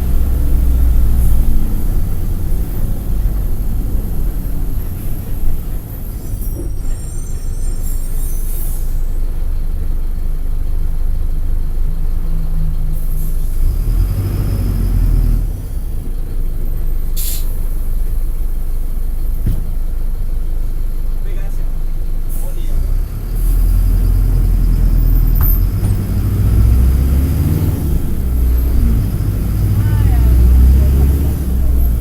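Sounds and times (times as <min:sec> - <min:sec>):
bus diesel engine running: 0:00.0 - 0:32.0
air hiss: 0:17.2 - 0:17.6.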